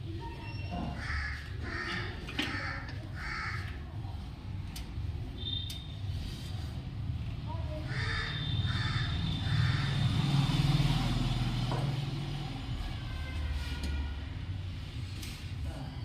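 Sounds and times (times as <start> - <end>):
crow cawing: 1.0 - 3.8, 7.9 - 10.2.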